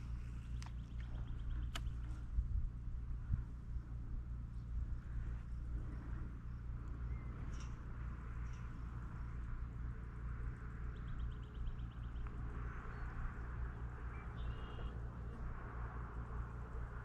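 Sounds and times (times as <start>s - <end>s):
steady low rumble: 0.0s - 17.0s
birds chirping and trilling: 0.3s - 2.2s, 10.9s - 15.0s.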